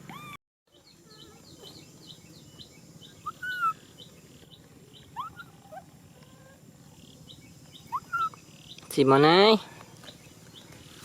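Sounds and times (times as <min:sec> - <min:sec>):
baby monkey crying: 0:00.0 - 0:00.4, 0:03.2 - 0:03.9, 0:05.1 - 0:06.6, 0:07.8 - 0:08.4
rapid high chirping: 0:01.0 - 0:06.2, 0:07.0 - 0:08.8.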